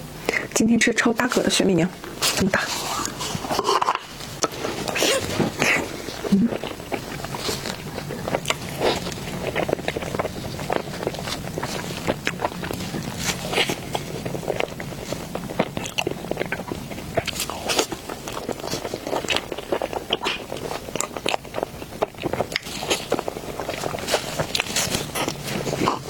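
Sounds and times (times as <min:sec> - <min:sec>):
biting and chewing: 0:01.3 - 0:26.0.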